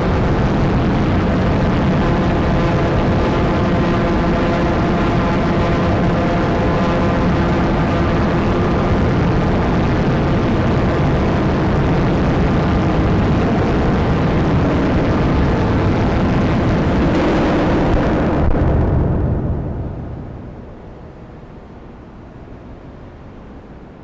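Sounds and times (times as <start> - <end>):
distorted noise drone: 0.0 - 24.0.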